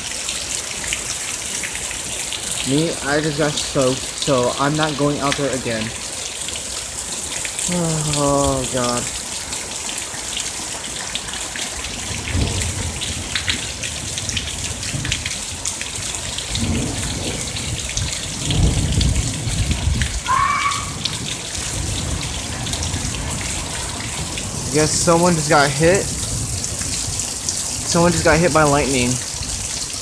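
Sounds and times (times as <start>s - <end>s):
heavy rain pouring: 0.0s - 30.0s
thunder rumbling: 12.0s - 29.8s.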